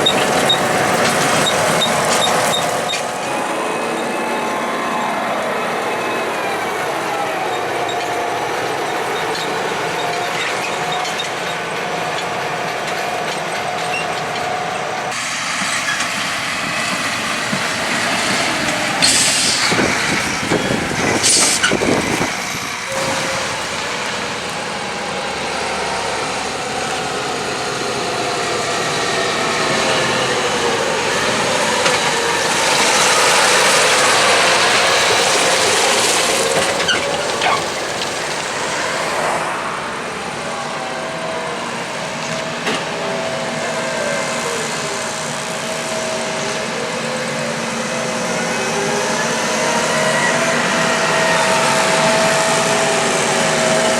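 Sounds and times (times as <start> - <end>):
farm machinery engines running: 0.0 - 53.9
loud hissing bursts: 17.7 - 26.2.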